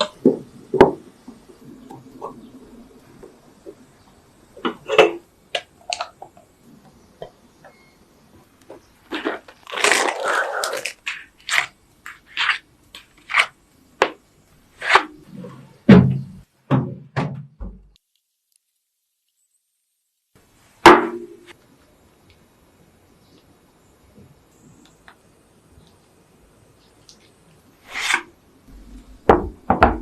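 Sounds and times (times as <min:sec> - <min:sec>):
food crunching: 0:09.0 - 0:13.5.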